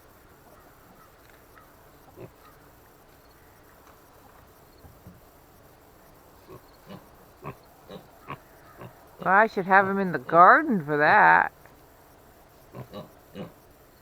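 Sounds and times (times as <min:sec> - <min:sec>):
piglets grunting softly: 0:02.1 - 0:02.5, 0:06.4 - 0:09.2, 0:12.7 - 0:13.6.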